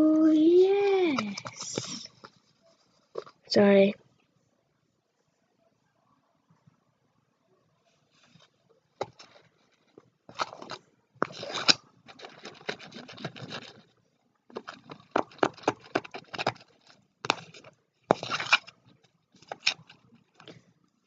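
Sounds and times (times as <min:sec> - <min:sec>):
utensil scraping and clicking bowl: 0:10.3 - 0:13.8, 0:14.6 - 0:20.6.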